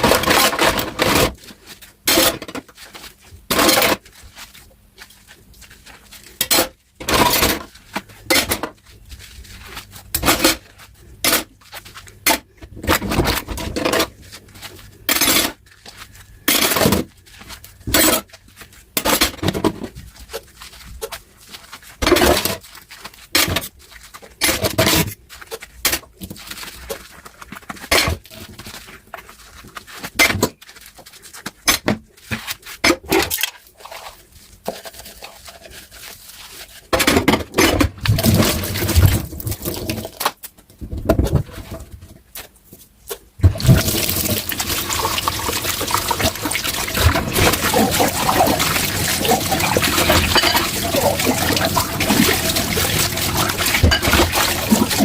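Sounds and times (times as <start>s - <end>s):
dishes clinking while washed: 15.0s - 15.6s, 43.4s - 55.0s.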